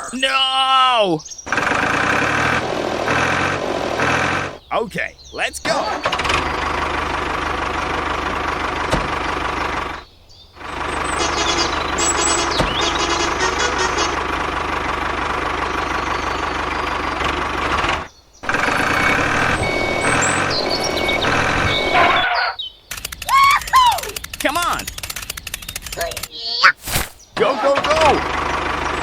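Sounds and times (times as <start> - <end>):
small motor running: 1.5 - 4.6, 6.0 - 10.0, 10.6 - 22.2, 22.9 - 26.3.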